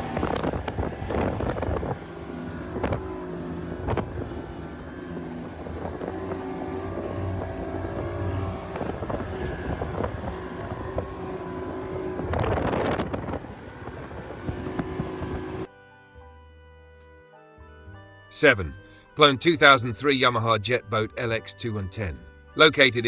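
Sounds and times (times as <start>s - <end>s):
outboard engine running: 0.0s - 15.7s
wind buffeting microphone: 0.0s - 15.7s.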